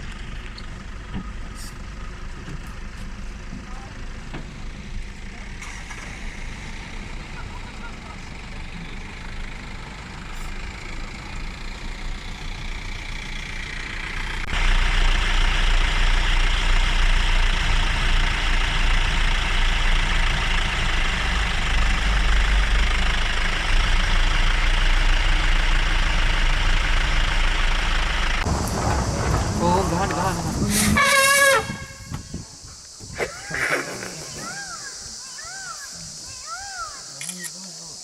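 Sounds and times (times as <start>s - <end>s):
engine rumbling: 0.0s - 36.5s
rushing noise: 28.4s - 32.2s.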